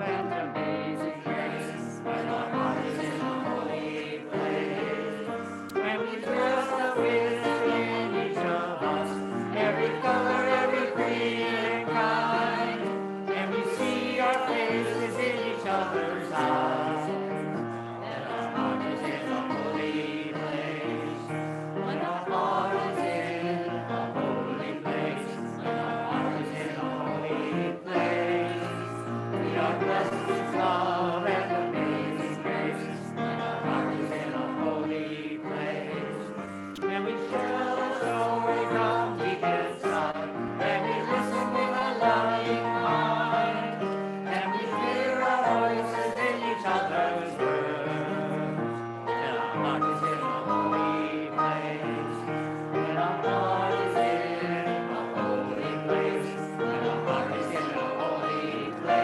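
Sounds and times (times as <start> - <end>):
congregation singing a hymn: 0.0 - 59.0.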